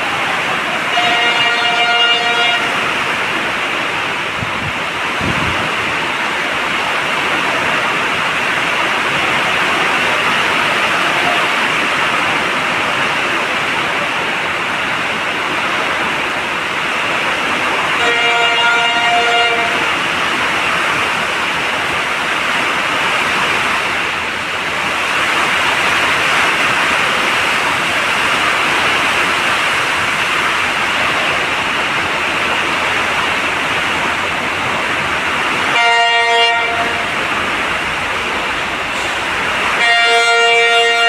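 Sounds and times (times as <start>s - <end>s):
heavy rain hissing: 0.0s - 41.0s
train horn: 0.1s - 3.3s, 11.0s - 11.8s, 17.8s - 20.1s, 35.6s - 37.4s, 39.0s - 41.0s.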